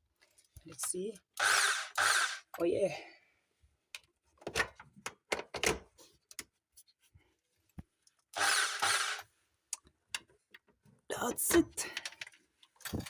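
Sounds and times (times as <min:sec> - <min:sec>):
small power tool running: 0:01.4 - 0:02.5, 0:08.4 - 0:09.2.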